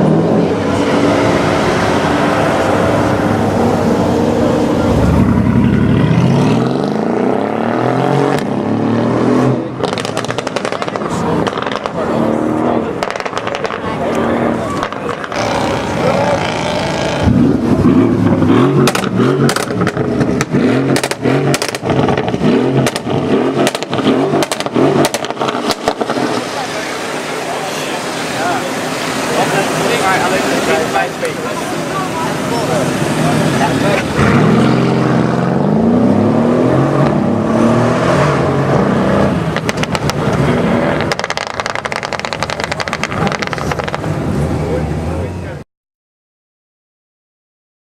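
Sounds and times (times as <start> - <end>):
car engine revving: 0.0 - 45.6
exhaust cracks and pops: 9.8 - 12.0, 13.0 - 13.8, 18.8 - 26.4, 39.5 - 44.1.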